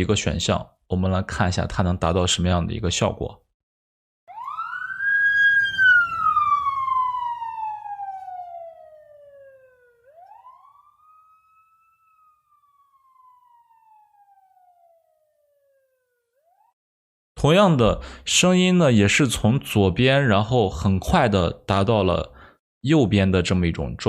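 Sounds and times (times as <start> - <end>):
police siren wailing: 4.3 - 16.8.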